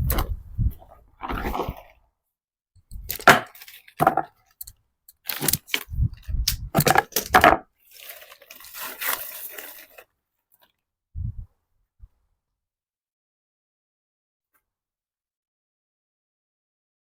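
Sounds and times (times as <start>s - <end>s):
leaves rustling: 7.9s - 10.0s.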